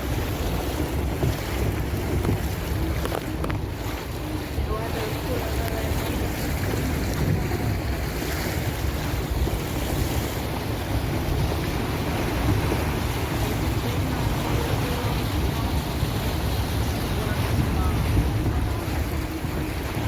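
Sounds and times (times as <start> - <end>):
rushing water: 0.0 - 20.0
wind buffeting microphone: 0.0 - 20.0.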